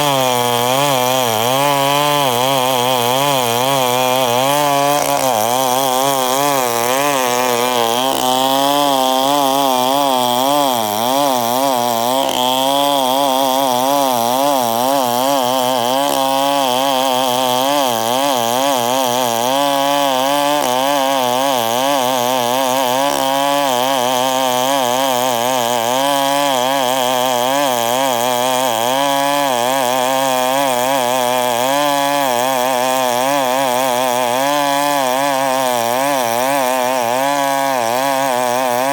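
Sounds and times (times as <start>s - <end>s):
chainsaw cutting wood: 0.0s - 38.9s.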